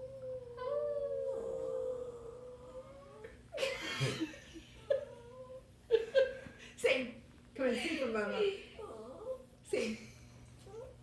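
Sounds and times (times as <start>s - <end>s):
dog howling: 0.0s - 3.3s.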